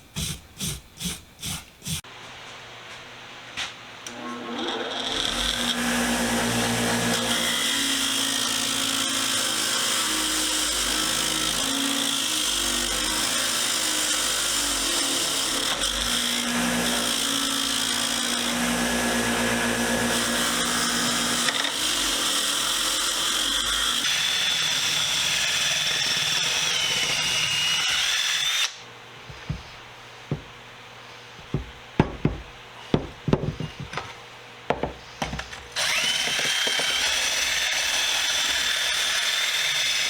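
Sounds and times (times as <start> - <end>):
power tool running: 4.1 - 28.8, 35.7 - 40.0.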